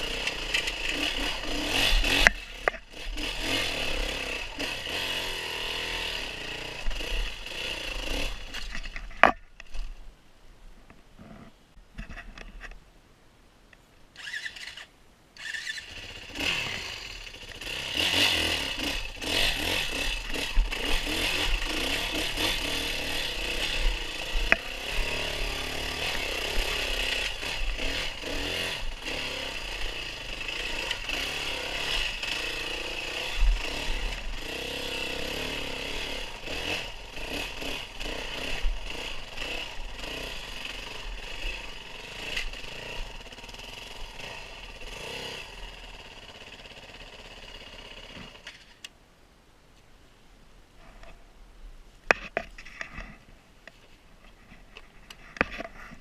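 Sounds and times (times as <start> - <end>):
off-road vehicle engine revving: 0.0 - 9.0, 14.2 - 48.5
noisy rattle: 0.0 - 9.9, 14.2 - 48.8.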